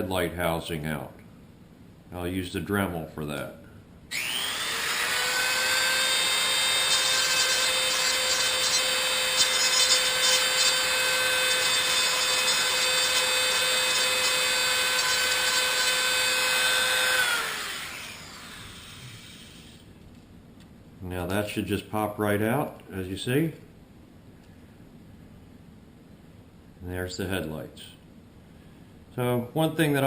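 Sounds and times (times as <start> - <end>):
rotary tool whining: 4.1 - 19.9.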